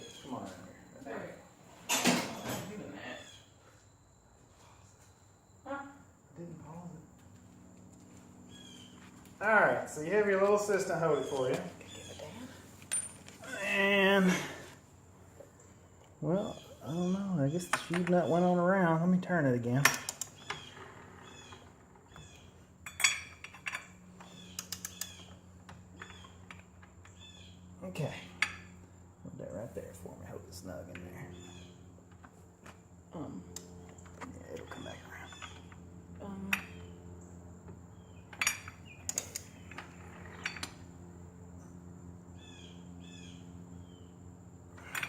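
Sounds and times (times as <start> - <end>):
steady low hum: 0.0 - 45.0
metal tools clinking: 12.8 - 13.5, 22.8 - 24.0, 38.3 - 40.9, 44.8 - 45.0.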